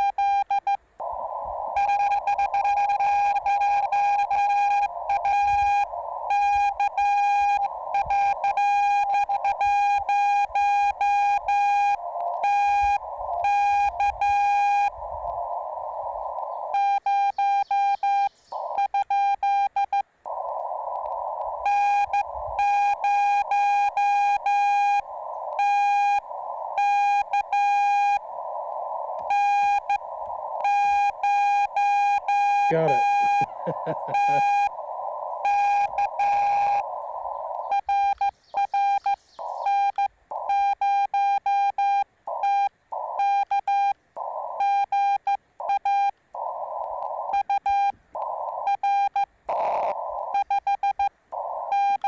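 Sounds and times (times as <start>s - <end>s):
morse code beeping tone: 0.0s - 0.8s, 1.8s - 15.0s, 16.7s - 20.0s, 21.6s - 28.2s, 29.3s - 34.8s, 35.4s - 46.2s, 47.2s - 52.0s
receiver hiss: 0.0s - 52.0s.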